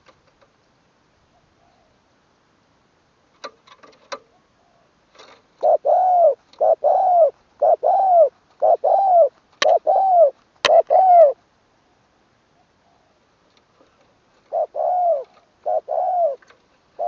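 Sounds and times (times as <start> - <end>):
dove cooing: 1.3 - 2.0, 5.6 - 11.4, 14.4 - 17.0.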